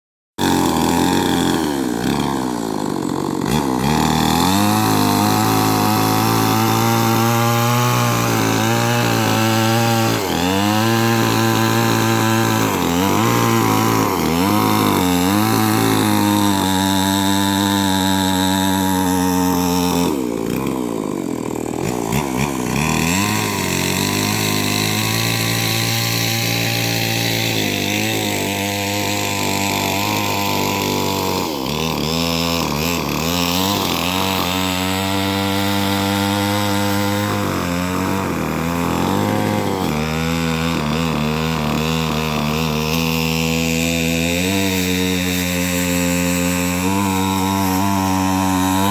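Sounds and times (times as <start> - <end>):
chainsaw cutting wood: 0.4 - 48.9.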